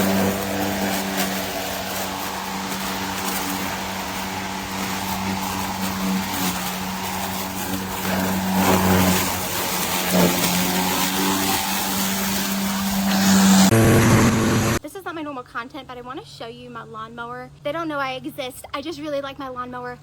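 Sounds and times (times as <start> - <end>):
electric lawn mower running: 0.0 - 14.8.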